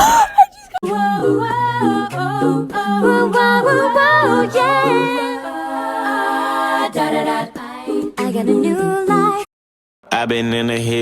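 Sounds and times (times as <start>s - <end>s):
a cappella harmony singing: 0.8s - 9.5s.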